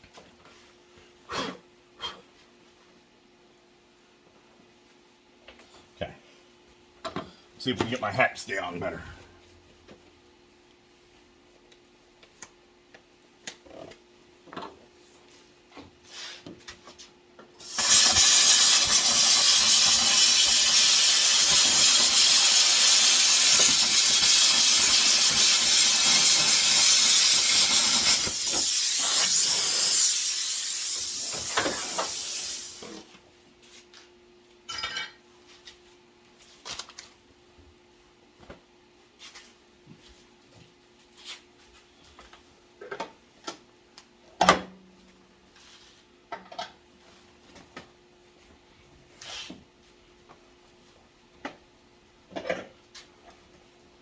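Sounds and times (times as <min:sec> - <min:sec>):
power tool cutting metal: 0:17.6 - 0:32.8.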